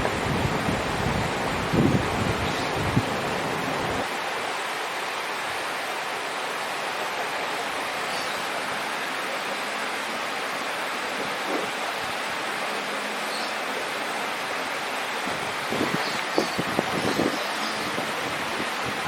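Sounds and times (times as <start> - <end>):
wind buffeting microphone: 0.0 - 4.1, 15.3 - 19.0
running water rushing: 0.0 - 19.0.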